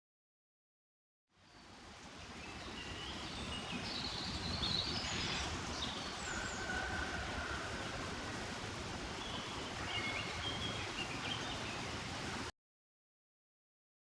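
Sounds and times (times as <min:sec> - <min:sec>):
steady background hiss: 0:01.4 - 0:12.5
small birds chirping: 0:01.5 - 0:06.7, 0:09.2 - 0:12.1.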